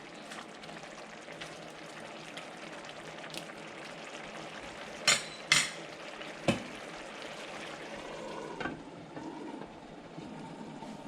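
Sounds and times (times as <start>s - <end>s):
food sizzling in a pan: 0.0s - 8.7s.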